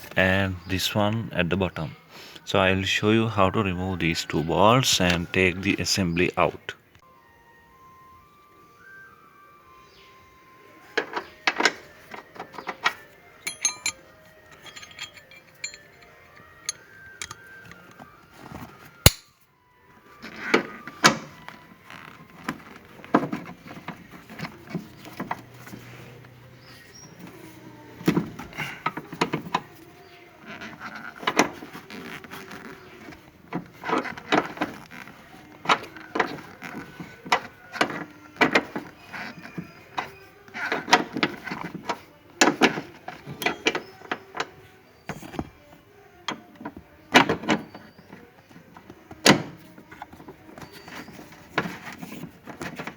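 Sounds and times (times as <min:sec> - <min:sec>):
metal and plastic parts handled: 0:11.0 - 0:19.2
hand tools clicking on bolts: 0:12.6 - 0:17.5, 0:19.0 - 0:19.3.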